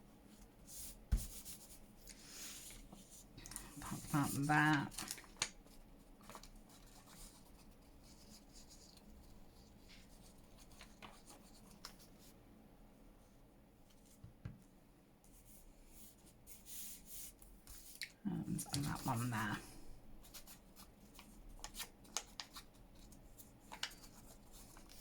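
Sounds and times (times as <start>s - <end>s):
paper rustling: 2.5s - 7.6s, 21.1s - 25.0s.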